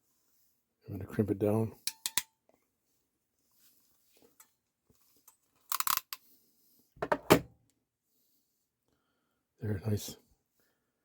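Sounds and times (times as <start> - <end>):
crimping pliers ratchet clicking: 5.7 - 6.2.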